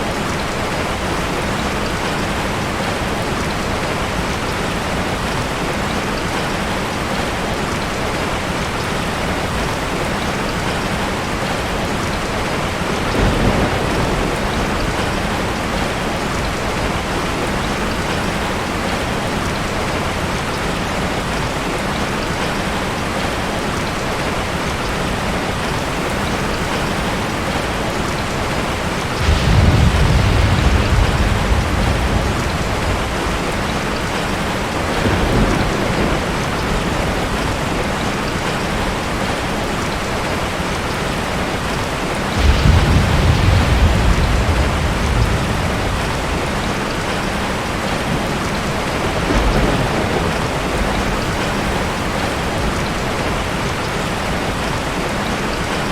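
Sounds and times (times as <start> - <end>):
heavy rain: 0.0 - 55.9
thunder rumbling: 12.0 - 20.8, 25.7 - 38.6, 42.1 - 54.0.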